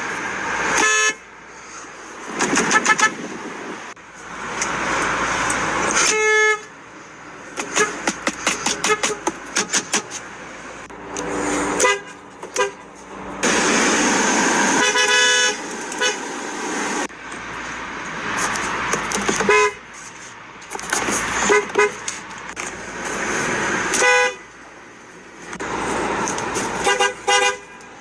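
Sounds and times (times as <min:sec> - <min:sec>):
car horns honking: 0:00.6 - 0:01.3, 0:02.4 - 0:03.4, 0:05.8 - 0:06.8, 0:07.5 - 0:16.4, 0:18.2 - 0:24.6, 0:25.6 - 0:28.0
loud rushing noise: 0:12.8 - 0:19.4.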